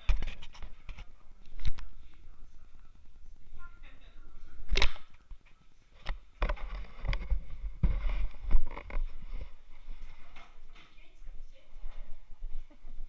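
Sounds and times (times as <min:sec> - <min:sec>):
rubbing against microphone: 0:06.4 - 0:10.7.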